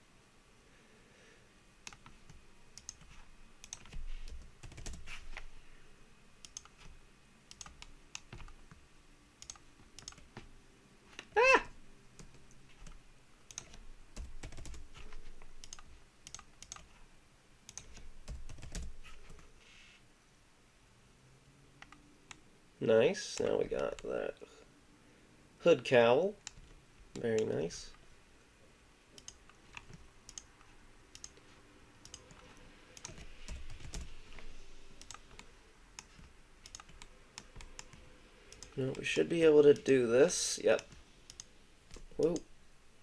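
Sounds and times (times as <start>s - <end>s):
keyboard keystrokes: 1.8s - 5.4s, 9.4s - 10.5s, 12.2s - 16.9s
mouse clicks: 1.8s - 5.5s, 6.4s - 8.8s, 9.4s - 10.5s, 12.2s - 13.8s, 15.0s - 17.0s, 17.7s - 18.1s, 29.1s - 31.4s, 32.0s - 39.0s, 40.7s - 42.5s.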